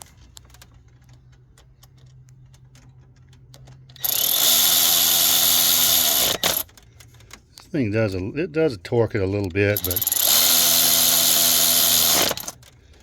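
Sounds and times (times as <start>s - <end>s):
power driver running: 4.0s - 6.7s, 9.2s - 13.0s.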